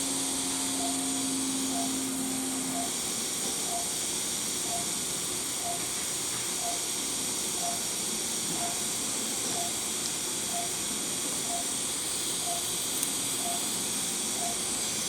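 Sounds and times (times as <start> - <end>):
patient monitor beeping: 0.8 - 1.0, 1.7 - 2.0, 2.7 - 3.0, 3.6 - 4.0, 4.6 - 4.9, 5.6 - 5.9, 6.6 - 6.8, 7.6 - 7.8, 8.5 - 8.8, 9.5 - 9.8, 10.5 - 10.8, 11.4 - 11.8, 12.4 - 12.7, 13.4 - 14.7.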